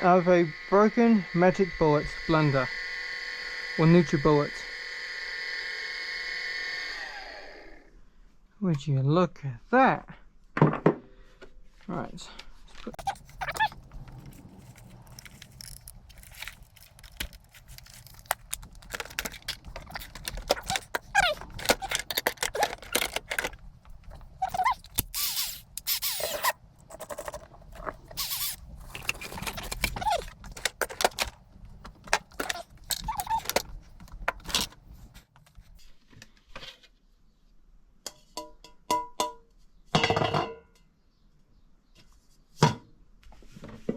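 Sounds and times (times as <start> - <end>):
plastic and metal parts clattering: 12.8 - 36.9.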